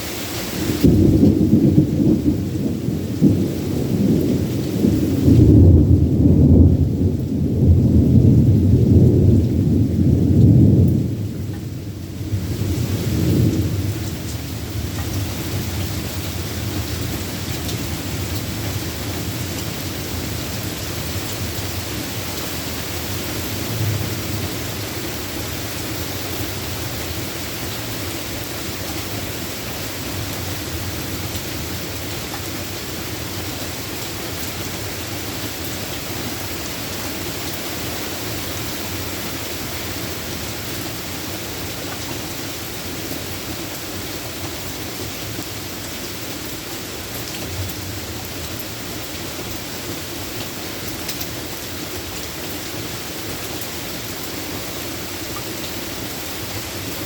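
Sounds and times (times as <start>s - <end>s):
steady rain falling: 0.0s - 57.0s
low thunder rumble: 0.6s - 27.7s.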